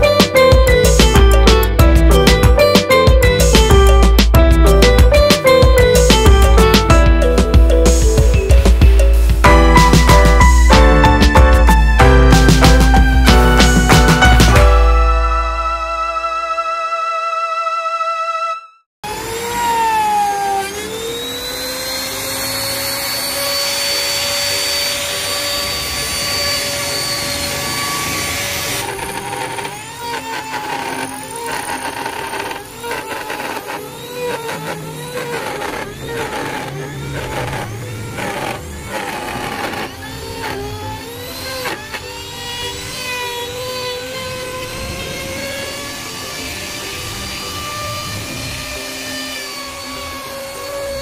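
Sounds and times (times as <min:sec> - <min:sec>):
power tool motor whining: 0:19.0 - 0:51.0.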